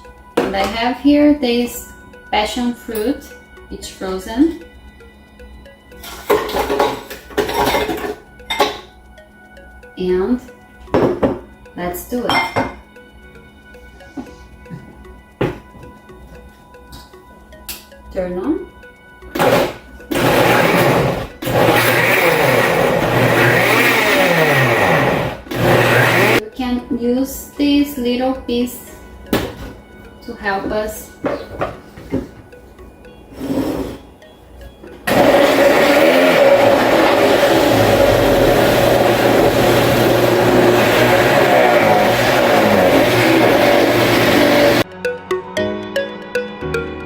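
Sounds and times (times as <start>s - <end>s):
blender running: 19.3s - 26.4s, 33.4s - 34.0s, 35.0s - 44.8s.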